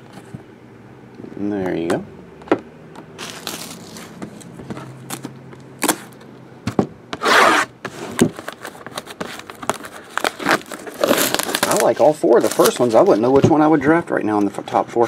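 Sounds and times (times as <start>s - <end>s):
cards and packaging crinkling: 3.2s - 6.1s, 8.3s - 13.3s.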